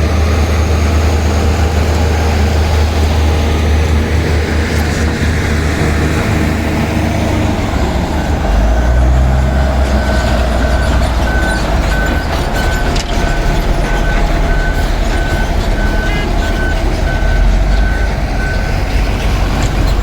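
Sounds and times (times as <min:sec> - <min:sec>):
bulldozer diesel engine running: 0:00.0 - 0:20.0
reversing alarm beeping: 0:07.3 - 0:18.9.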